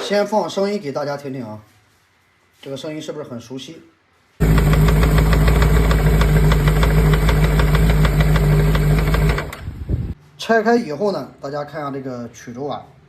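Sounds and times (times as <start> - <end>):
fast regular engine knock: 4.4 - 9.6
motorcycle engine running: 4.4 - 10.1.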